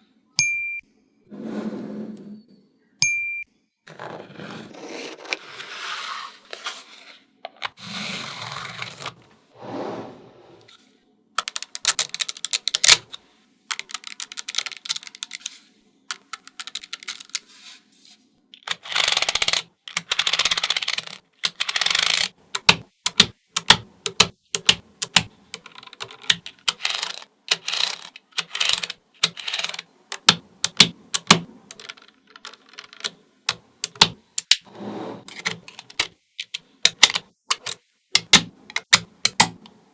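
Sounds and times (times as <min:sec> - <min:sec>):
magnetic balls clicking together: 0:18.6 - 0:34.7, 0:35.5 - 0:39.7.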